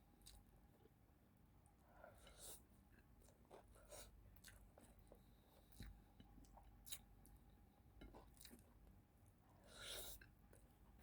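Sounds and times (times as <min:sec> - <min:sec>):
close chewing and mouth sounds: 0:00.1 - 0:00.9, 0:01.7 - 0:11.0.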